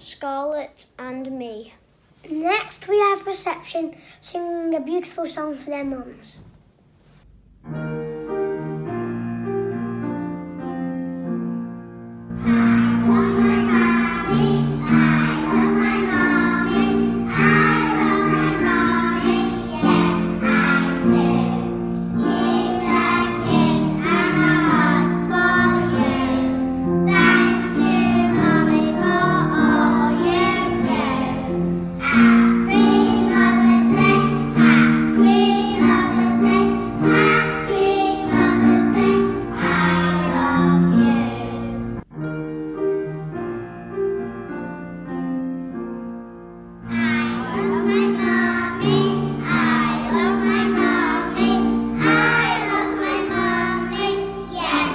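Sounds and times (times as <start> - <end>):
children singing: 12.3 - 42.0, 46.8 - 54.9.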